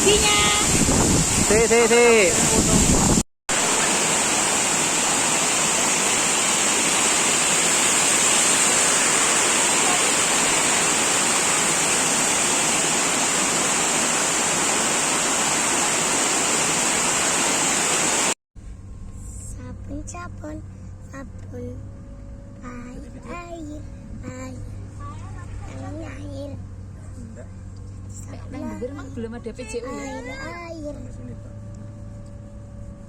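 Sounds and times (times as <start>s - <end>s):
waterfall rushing: 0.0s - 18.4s.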